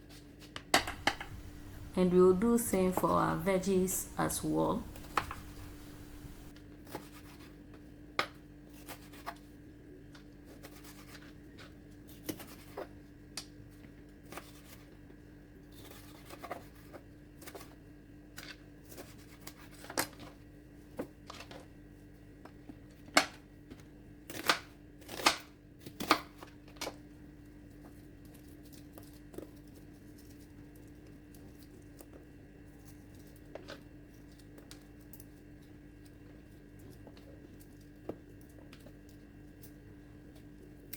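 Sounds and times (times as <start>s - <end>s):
faint steady hum: 0.8s - 6.6s.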